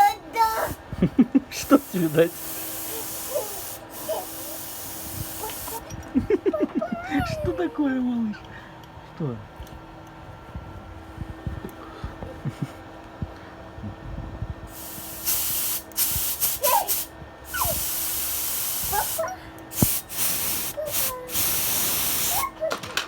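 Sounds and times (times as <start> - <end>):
hissing bursts of blown air: 0.0 - 0.9, 1.5 - 5.9, 14.7 - 22.6.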